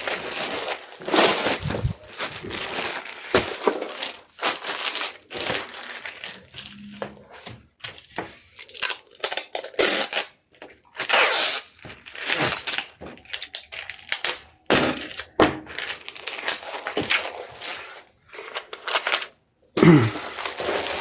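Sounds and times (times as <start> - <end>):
plastic packaging crinkling: 0.0 - 21.0
tearing sound: 1.1 - 3.0, 8.7 - 10.4, 11.0 - 11.7.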